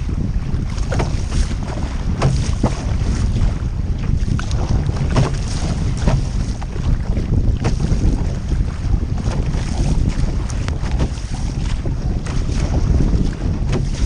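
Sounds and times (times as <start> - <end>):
paddle water splashes: 0.0 - 14.0
wind buffeting microphone: 0.0 - 14.0.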